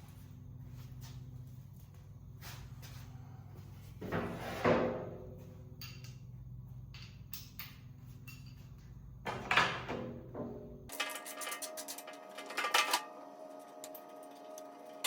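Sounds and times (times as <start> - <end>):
metal clanks with ring: 5.8 - 6.3, 6.9 - 8.8.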